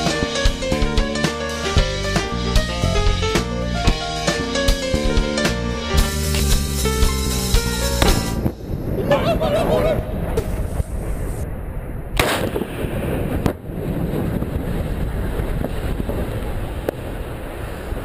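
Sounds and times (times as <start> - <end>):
sharp thump: 7.9 - 8.6
wind buffeting microphone: 8.0 - 18.0.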